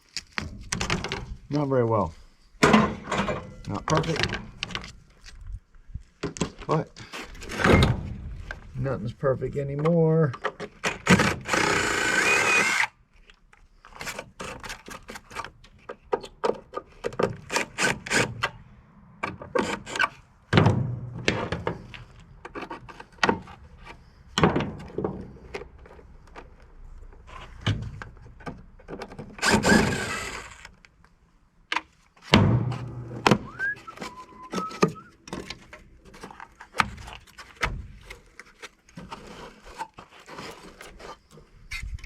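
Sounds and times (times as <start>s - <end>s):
heavy metal thunks: 2.6s - 3.6s, 32.3s - 33.6s.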